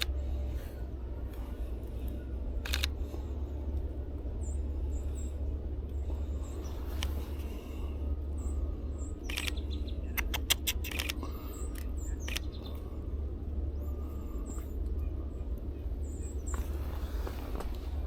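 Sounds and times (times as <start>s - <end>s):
small birds chirping: 0.0s - 18.0s
steady low rumble: 0.0s - 18.0s
sharp clicks: 2.6s - 3.0s, 9.2s - 12.8s.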